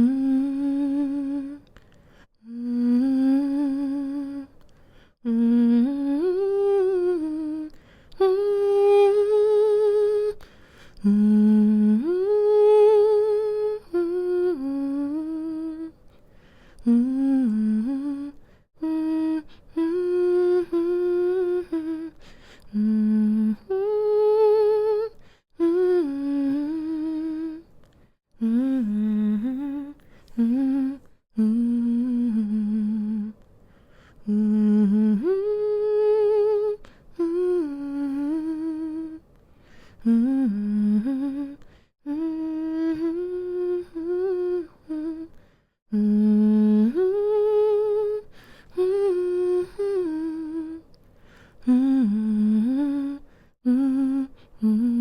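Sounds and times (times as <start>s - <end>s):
woman humming a lullaby: 0.0s - 1.7s, 2.4s - 4.5s, 40.0s - 50.9s.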